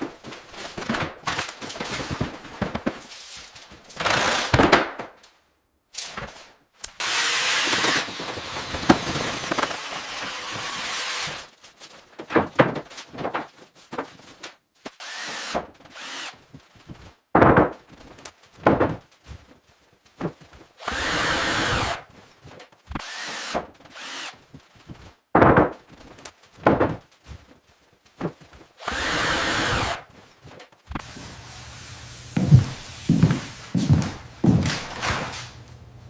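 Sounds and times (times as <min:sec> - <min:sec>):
power tool noise: 0:07.0 - 0:11.5, 0:15.0 - 0:16.4, 0:20.8 - 0:22.0, 0:23.0 - 0:24.4, 0:28.8 - 0:30.0.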